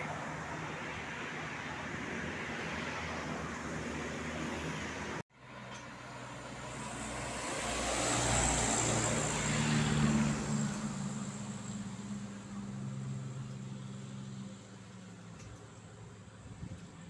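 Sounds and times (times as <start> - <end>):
vehicle driving past: 2.6 - 14.9.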